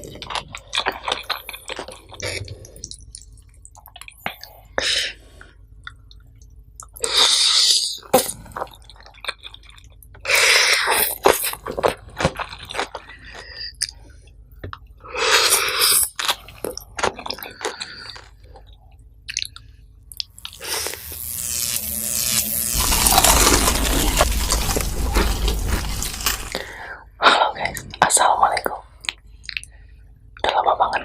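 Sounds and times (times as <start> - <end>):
crunchy bites: 20.2 - 26.8
rushing liquid: 22.8 - 26.6
wet chewing: 22.8 - 26.7.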